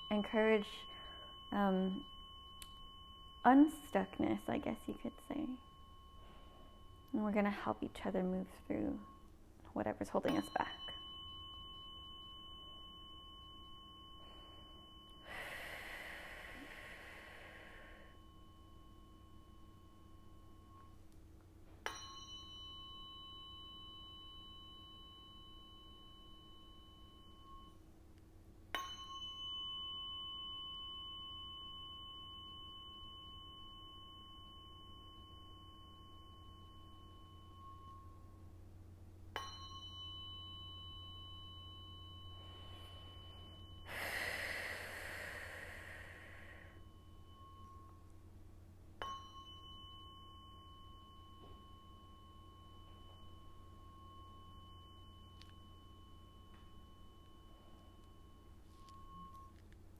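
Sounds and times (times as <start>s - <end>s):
tuning fork ringing: 0.0s - 59.9s
person breathing: 0.8s - 1.4s, 6.2s - 6.9s, 15.2s - 18.2s, 42.4s - 46.9s.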